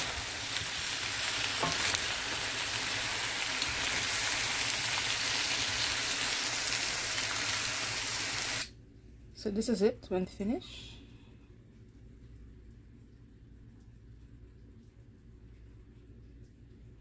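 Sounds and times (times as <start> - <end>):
food sizzling in a pot: 0.0 - 8.7.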